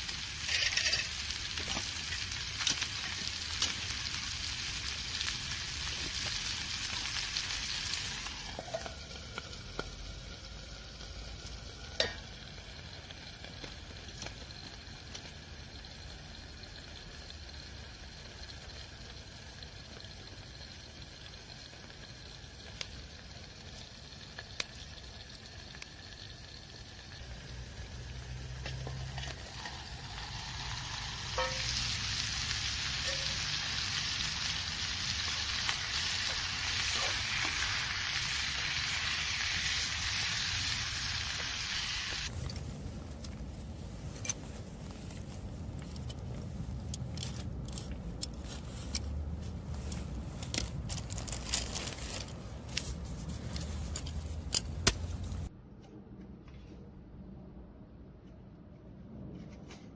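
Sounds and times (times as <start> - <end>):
crackles and ticks: 0.0 - 38.8, 44.2 - 49.1
food sizzling in a pan: 0.0 - 42.3.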